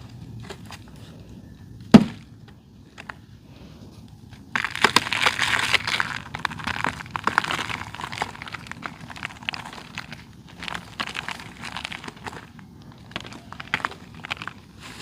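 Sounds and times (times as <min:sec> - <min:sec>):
dirt crunching and crackling: 0:00.0 - 0:15.0
clay chunk cracking: 0:01.9 - 0:02.3, 0:04.3 - 0:15.0.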